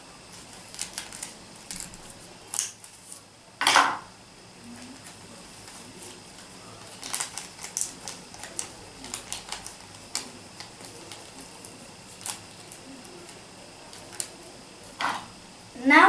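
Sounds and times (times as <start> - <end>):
plastic packet and bowl clicks: 0.7 - 3.0, 6.4 - 12.8.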